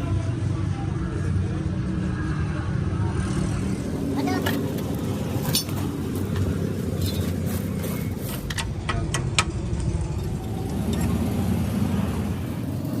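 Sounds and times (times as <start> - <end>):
vehicle engine rumbling: 0.0 - 13.0.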